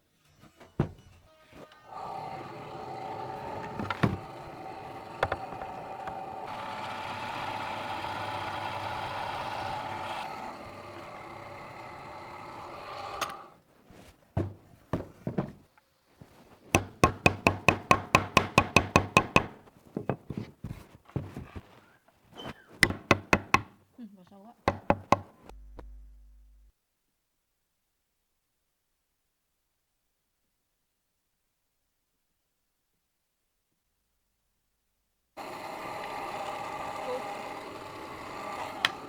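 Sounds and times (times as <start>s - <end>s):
small motor running: 1.8s - 13.6s, 35.4s - 39.0s
fast run of sharp knocks: 16.8s - 20.3s, 22.8s - 23.8s.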